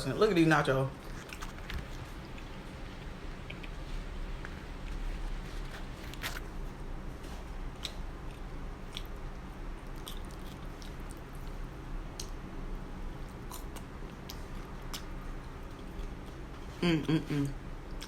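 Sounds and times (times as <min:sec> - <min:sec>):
fan humming: 0:00.0 - 0:18.0
chewing mouth sounds: 0:00.9 - 0:06.5, 0:07.8 - 0:12.4, 0:13.2 - 0:18.0
chips crunching: 0:01.0 - 0:03.8, 0:04.4 - 0:06.6.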